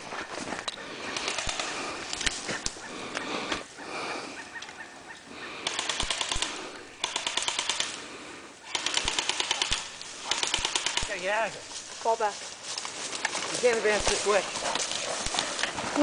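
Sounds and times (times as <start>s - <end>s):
scattered clicks: 0.6s - 3.6s, 5.6s - 8.0s, 8.7s - 11.4s
airsoft guns firing bursts: 1.1s - 1.9s, 5.6s - 8.1s, 8.7s - 11.4s
rustling: 8.7s - 16.0s.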